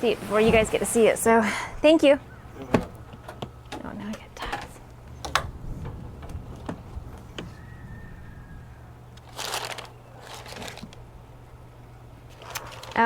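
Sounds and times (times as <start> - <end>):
packaging clicks: 9.1 - 11.0
packaging rustling: 9.1 - 11.1, 12.2 - 13.0.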